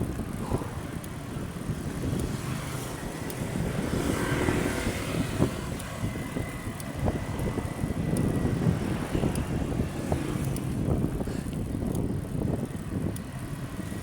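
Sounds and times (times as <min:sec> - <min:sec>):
bicycle tyre road noise: 0:00.0 - 0:14.0
faint high ticks: 0:00.9 - 0:01.3, 0:02.0 - 0:10.8, 0:11.5 - 0:12.1, 0:13.0 - 0:14.0.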